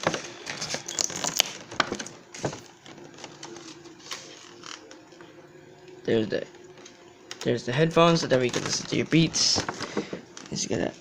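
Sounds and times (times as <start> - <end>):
packaging rustling: 0.0 - 5.0, 8.2 - 10.7.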